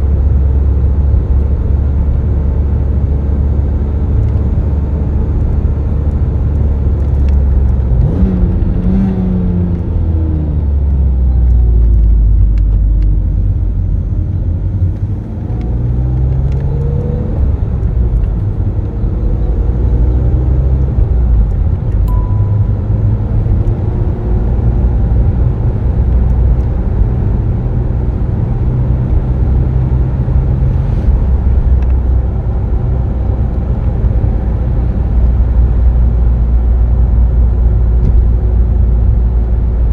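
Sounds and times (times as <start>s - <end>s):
car engine while driving: 0.0s - 39.9s.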